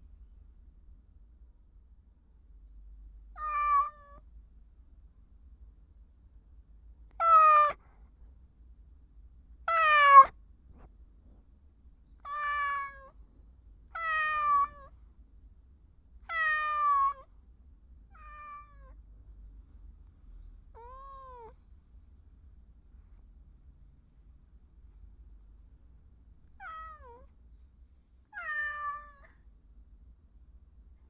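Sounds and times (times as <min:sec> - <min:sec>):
cat meowing: 0:03.3 - 0:04.2, 0:07.2 - 0:07.8, 0:09.7 - 0:10.3, 0:12.2 - 0:13.2, 0:13.9 - 0:14.9, 0:16.3 - 0:17.3, 0:18.1 - 0:19.0, 0:20.7 - 0:21.6, 0:26.6 - 0:27.3, 0:28.3 - 0:29.4.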